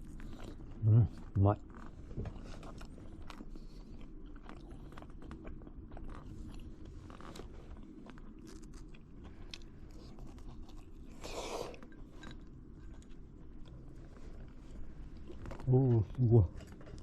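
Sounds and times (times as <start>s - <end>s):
person chewing crunchy food: 0.0s - 17.0s.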